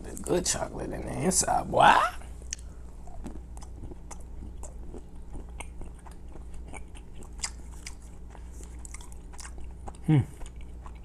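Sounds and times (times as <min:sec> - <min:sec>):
faint steady hum: 0:00.0 - 0:11.0
person chewing chocolate: 0:02.4 - 0:11.0.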